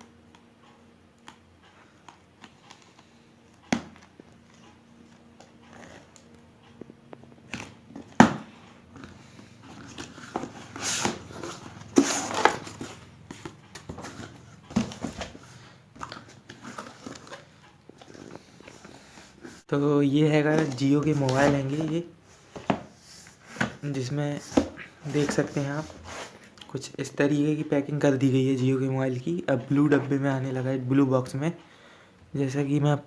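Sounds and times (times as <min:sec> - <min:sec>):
cardboard box handling noise: 0:07.5 - 0:19.4.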